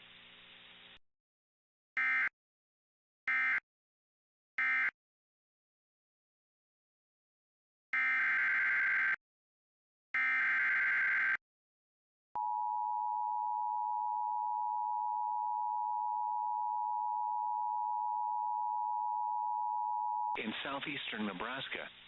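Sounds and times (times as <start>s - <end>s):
steady single-pitch alert tone: 12.4s - 20.4s.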